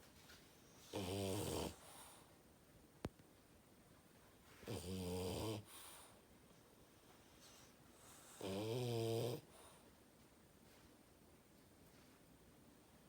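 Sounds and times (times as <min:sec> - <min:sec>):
dog snoring: 0:00.8 - 0:02.2, 0:04.7 - 0:06.1, 0:08.0 - 0:09.8.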